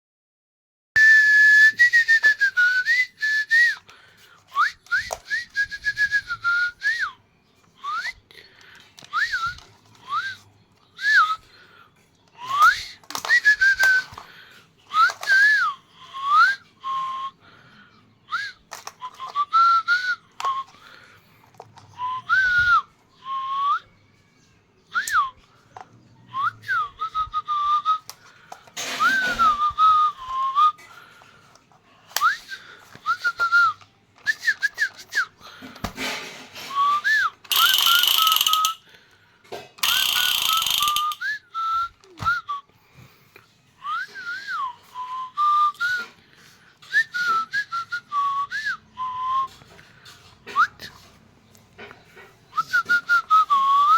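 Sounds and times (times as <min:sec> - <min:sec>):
clicks and clatter: 0:33.0 - 0:38.8, 0:39.5 - 0:41.3.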